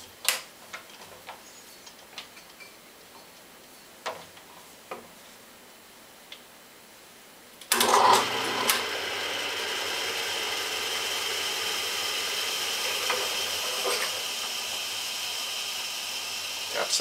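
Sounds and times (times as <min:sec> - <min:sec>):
milling machine motor whine: 0:07.7 - 0:17.0.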